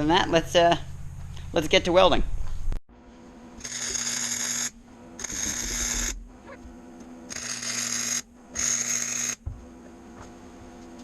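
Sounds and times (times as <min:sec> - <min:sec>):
low hum: 0:00.0 - 0:11.0
electric welder crackling hiss: 0:03.6 - 0:06.6, 0:07.3 - 0:09.4.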